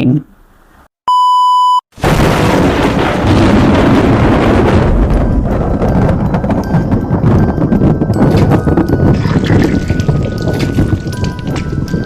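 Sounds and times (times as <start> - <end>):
short electronic beep: 1.1 - 1.8
loud low rumbling blast: 2.0 - 11.2.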